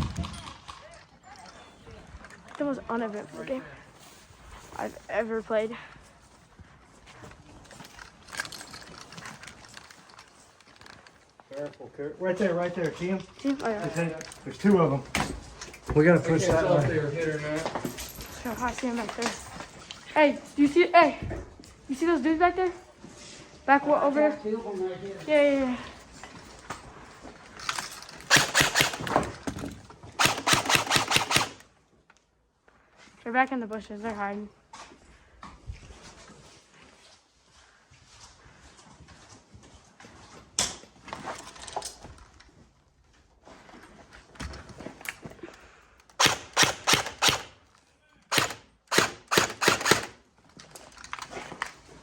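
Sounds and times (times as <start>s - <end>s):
airsoft gun bursts: 28.3s - 29.2s, 30.2s - 31.6s, 46.1s - 47.6s, 48.3s - 50.2s.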